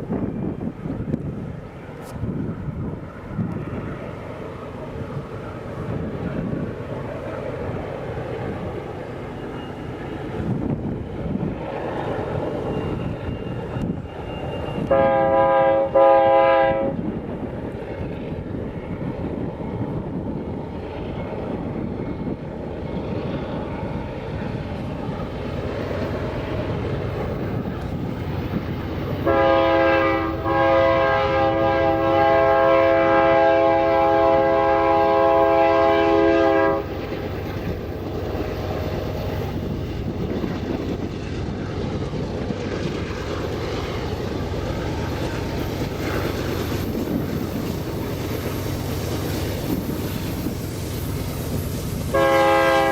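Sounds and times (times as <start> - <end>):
passing train rumbling: 0.0 - 52.9
locomotive air horn blasts: 14.8 - 17.0, 29.2 - 36.9, 52.1 - 52.9.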